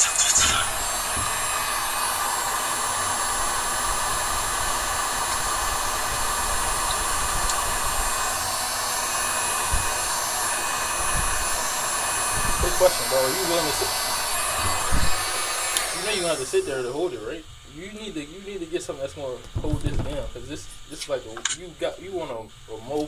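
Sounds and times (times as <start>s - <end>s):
heat gun blowing: 0.0s - 17.2s.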